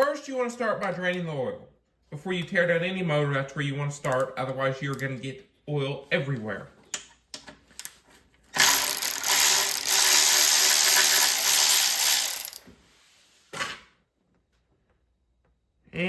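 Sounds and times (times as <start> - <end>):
ratchet wrench cranking: 8.6 - 12.6.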